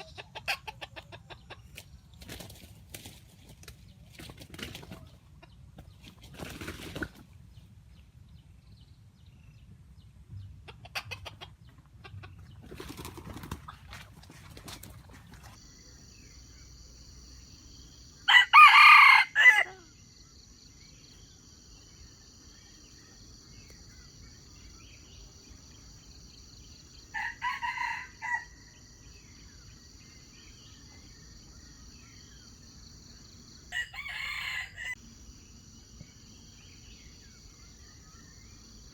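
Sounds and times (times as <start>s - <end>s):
roosters crowing: 18.3s - 19.9s, 27.1s - 28.8s, 33.7s - 35.0s.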